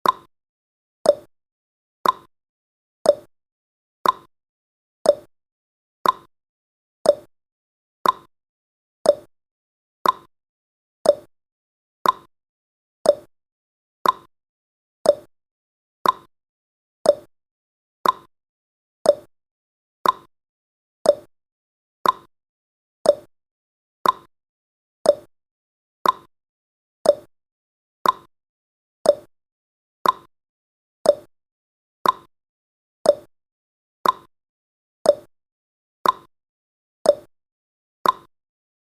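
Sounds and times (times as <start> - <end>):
clock ticking: 2.0 - 2.3, 6.0 - 6.3, 8.0 - 8.3, 10.0 - 10.3, 12.0 - 12.3, 13.1 - 13.3, 14.0 - 14.3, 15.1 - 15.3, 16.0 - 16.3, 18.0 - 18.3, 20.0 - 20.3, 22.0 - 22.3, 24.0 - 24.3, 25.1 - 25.3, 26.0 - 26.3, 27.1 - 27.3, 28.0 - 28.3, 29.1 - 29.3, 30.0 - 30.3, 32.0 - 32.3, 33.1 - 33.3, 34.0 - 34.3, 36.0 - 36.3, 38.0 - 38.3.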